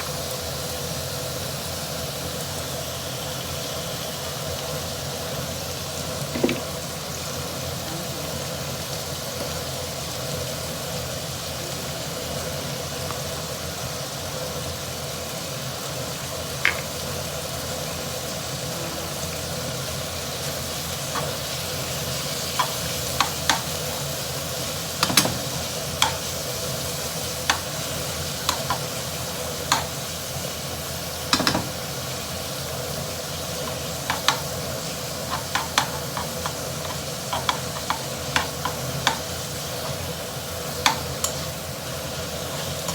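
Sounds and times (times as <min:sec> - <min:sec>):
food sizzling in a pan: 0:00.0 - 0:42.9
spatula knocking against pan: 0:25.0 - 0:26.3, 0:31.3 - 0:31.8, 0:33.6 - 0:34.6, 0:35.2 - 0:40.1, 0:40.7 - 0:41.4.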